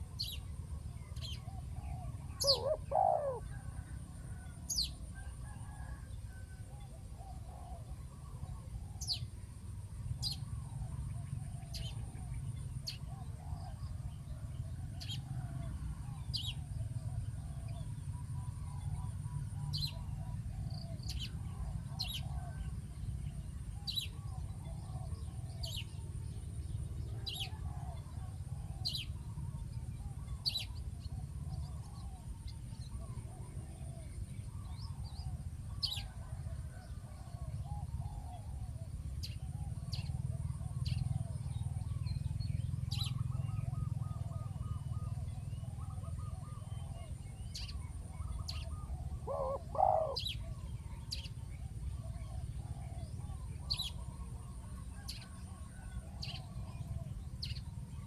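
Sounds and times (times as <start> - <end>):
high downward-sweeping bird calls: 2.4 - 3.5, 48.4 - 50.6.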